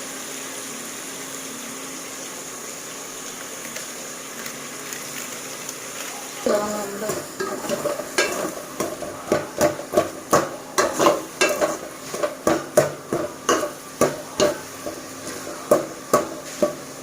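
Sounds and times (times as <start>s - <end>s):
faint sizzle: 0.0s - 17.0s
spoon knocking and scraping pot: 7.0s - 17.0s.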